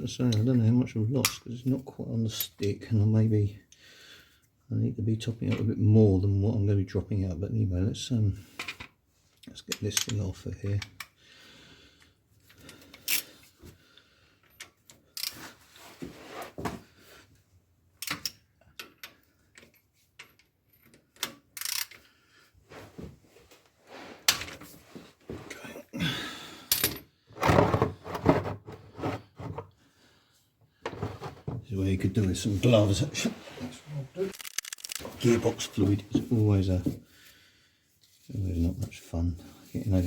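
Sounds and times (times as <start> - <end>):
wrench clicking and clattering on metal: 18.0 - 22.0.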